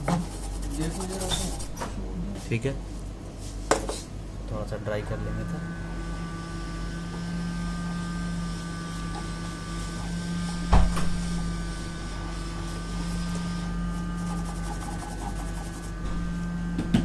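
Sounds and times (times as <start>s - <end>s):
hot air blower humming: 5.0s - 17.0s.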